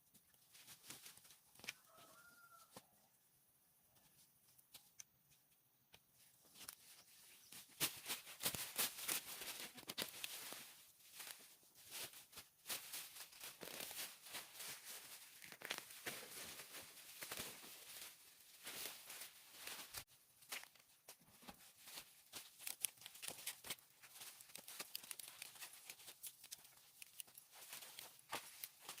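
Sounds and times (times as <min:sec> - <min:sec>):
rustling and scraping: 0:06.2 - 0:29.0.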